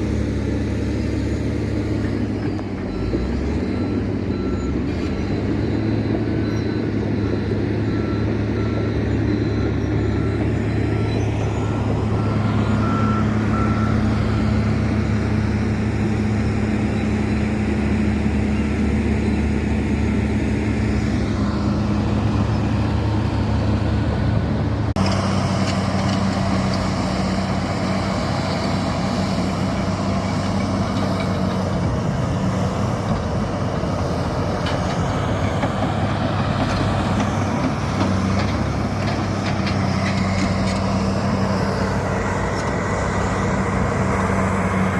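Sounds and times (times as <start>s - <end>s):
diesel machinery engine hum: 0.0s - 44.9s
reversing alarm beeping: 0.1s - 24.0s.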